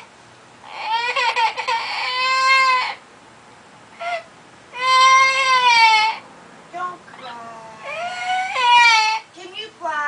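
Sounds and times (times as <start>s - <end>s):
parrot mimicking crying baby: 0.0s - 3.1s, 3.9s - 6.3s, 7.1s - 9.3s.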